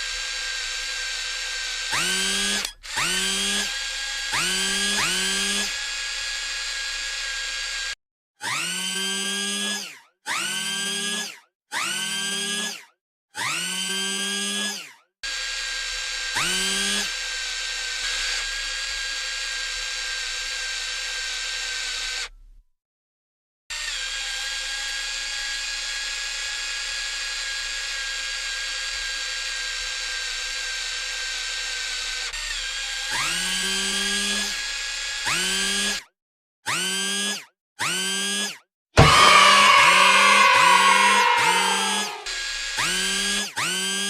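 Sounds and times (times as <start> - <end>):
toy electric motor whirring: 0.0 - 14.9, 15.5 - 17.1, 36.7 - 38.6, 42.9 - 44.0.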